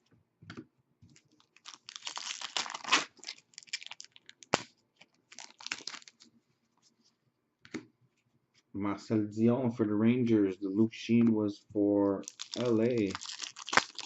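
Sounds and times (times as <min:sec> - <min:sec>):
cards rustling and crinkling: 0:01.1 - 0:06.4, 0:12.2 - 0:14.0.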